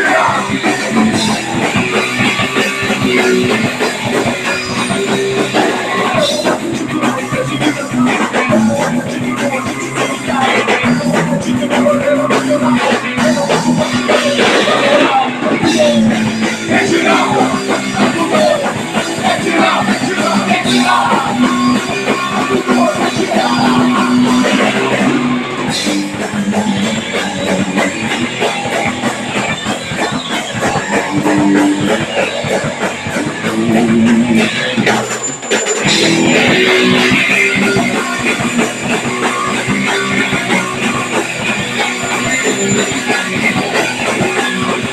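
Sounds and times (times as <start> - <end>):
person singing: 0.0 - 25.6, 30.7 - 35.1, 35.8 - 44.9
bass: 0.0 - 44.9
distorted electric guitars: 0.0 - 44.9
drum kit: 0.0 - 44.9.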